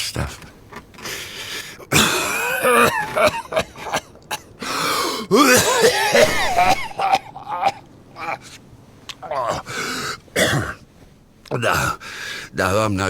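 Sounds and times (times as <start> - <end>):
old man coughing: 1.8 - 8.4, 9.3 - 10.8.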